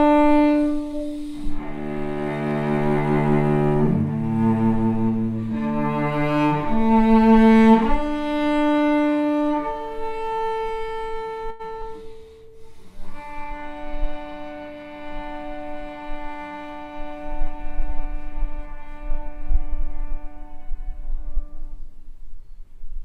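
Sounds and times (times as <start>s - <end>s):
bowed string instrument melody: 0.0s - 22.1s.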